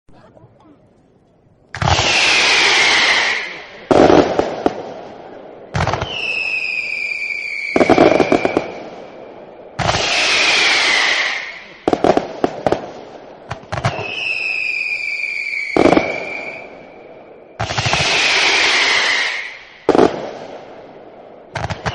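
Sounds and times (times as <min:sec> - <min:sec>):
fireworks bangs: 0:01.7 - 0:21.9
whistling rockets: 0:01.8 - 0:20.8, 0:21.5 - 0:21.9
crackling pops: 0:21.6 - 0:21.9.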